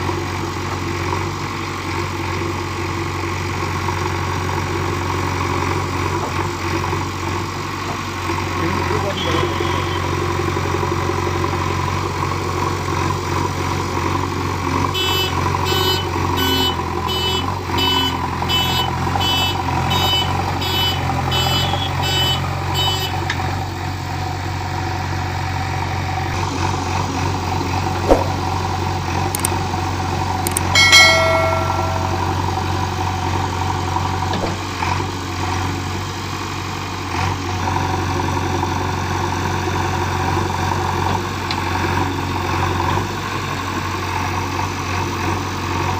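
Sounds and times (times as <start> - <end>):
diesel engine running: 0.0 - 30.7, 32.0 - 45.9
short loud tone: 9.2 - 10.3, 30.5 - 32.8.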